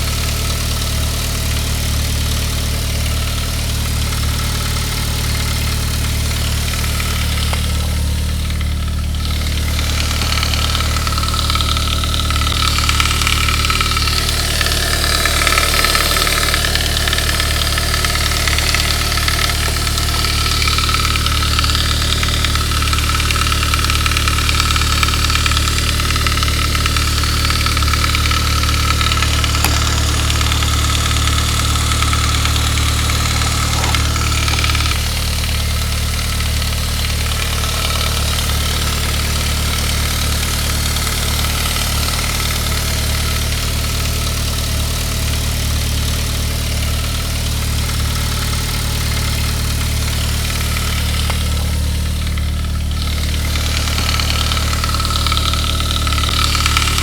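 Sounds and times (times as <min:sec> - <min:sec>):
car engine idling: 0:00.0 - 0:57.0
timing chain guide rattling: 0:09.3 - 0:35.2.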